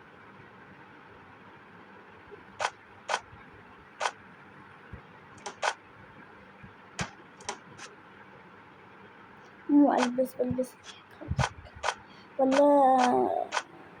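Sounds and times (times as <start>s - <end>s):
short sharp clicks: 2.6s - 3.3s, 5.4s - 5.8s, 7.0s - 7.9s, 10.8s - 13.7s.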